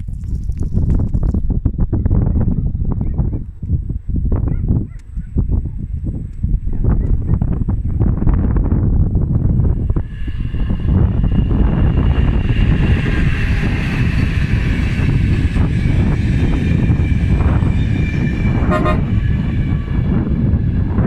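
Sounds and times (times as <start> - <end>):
train passing rumble: 5.2 - 21.0
short high train horn: 17.3 - 20.0.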